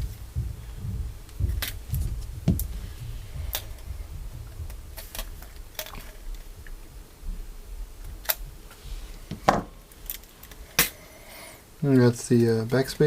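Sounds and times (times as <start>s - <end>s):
low handling rumble: 0.0s - 8.7s.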